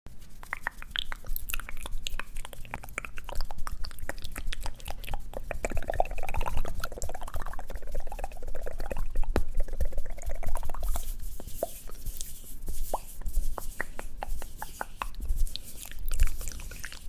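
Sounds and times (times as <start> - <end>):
crunchy chewing: 0.4 - 6.8, 15.0 - 17.0
small wet pops: 12.9 - 17.0.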